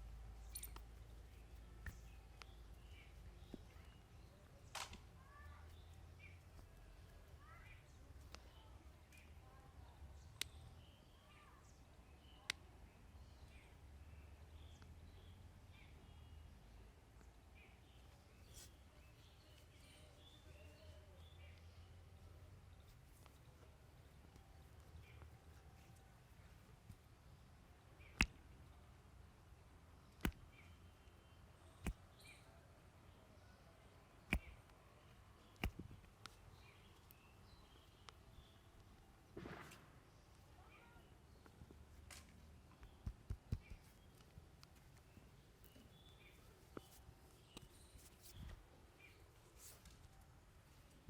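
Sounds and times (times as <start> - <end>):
faint bird chirps: 0.0 - 28.8, 40.1 - 41.8
sharp cracks from hands: 4.6 - 5.2, 30.1 - 30.6, 34.2 - 34.8, 35.4 - 37.2
sharp clicks: 34.3 - 34.8.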